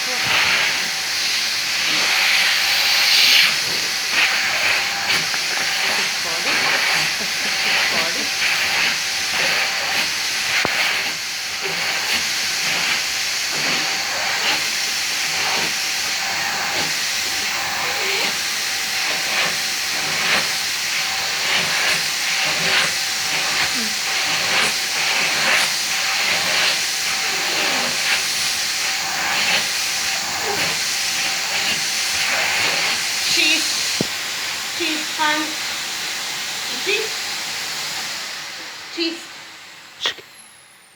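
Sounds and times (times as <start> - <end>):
vacuum cleaner running: 0.0 - 40.9.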